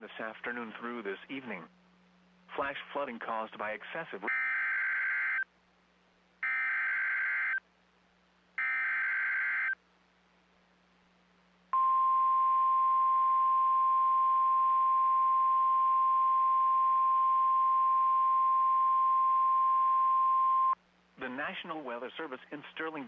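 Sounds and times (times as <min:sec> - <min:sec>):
steady high alarm tone: 0:04.3 - 0:05.4, 0:06.4 - 0:07.6, 0:08.6 - 0:09.8.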